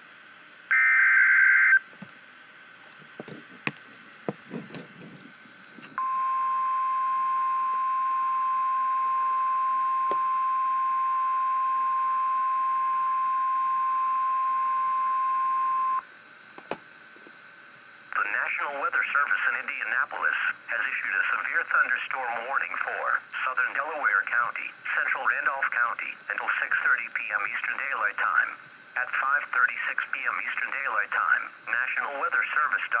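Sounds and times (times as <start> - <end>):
steady warning alarm tone: 0.7 - 1.9.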